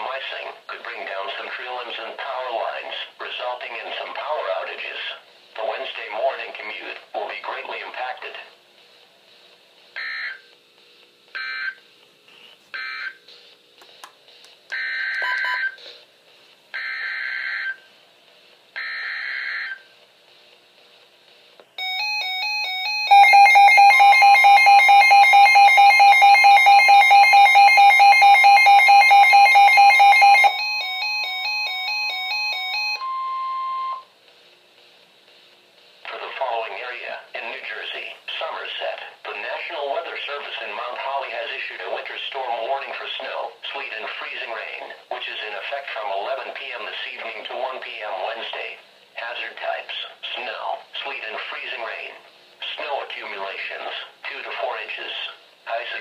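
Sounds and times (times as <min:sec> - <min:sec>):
steady warning alarm tone: 0:10.0 - 0:10.4, 0:11.4 - 0:11.8, 0:12.8 - 0:13.2, 0:14.7 - 0:15.8, 0:16.8 - 0:17.9, 0:18.8 - 0:19.9, 0:21.8 - 0:34.1
rapidly pulsing electronic alarm: 0:10.0 - 0:10.5, 0:11.3 - 0:11.8, 0:12.8 - 0:13.4, 0:14.7 - 0:15.8, 0:16.7 - 0:17.9, 0:18.8 - 0:19.9, 0:21.8 - 0:34.1.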